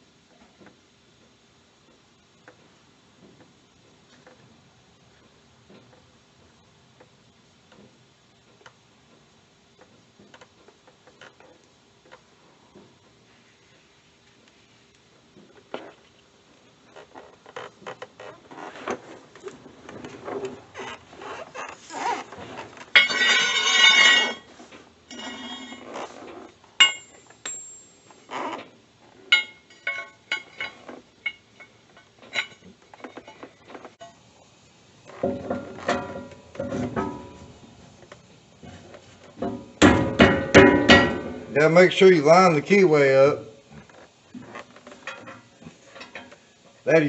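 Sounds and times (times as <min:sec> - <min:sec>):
rattling metal scrape: 0:21.9 - 0:26.4
metal tools clanking on steel: 0:23.0 - 0:24.5, 0:25.1 - 0:25.9, 0:26.8 - 0:28.3, 0:29.3 - 0:34.2
sharp ringing metal clank: 0:26.8 - 0:28.3, 0:39.9 - 0:41.5.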